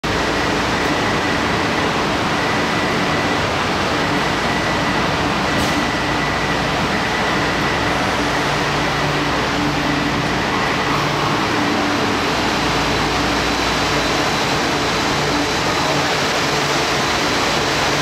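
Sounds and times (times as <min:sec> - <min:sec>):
train running rumble: 0:00.0 - 0:18.0.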